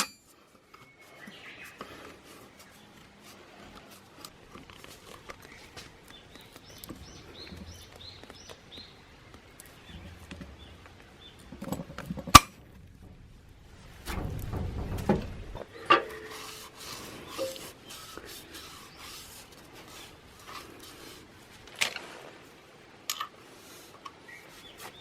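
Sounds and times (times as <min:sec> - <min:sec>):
bird chirping: 0:05.3 - 0:12.0.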